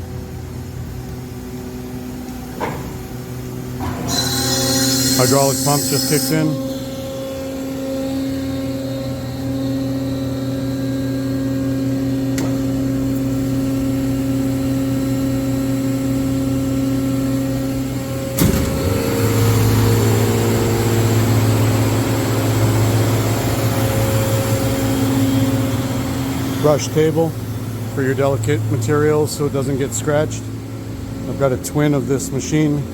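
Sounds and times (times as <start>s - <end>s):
hydraulic pump humming: 0.0s - 32.9s
sharp mechanical clunk: 2.6s - 3.1s, 18.4s - 19.0s.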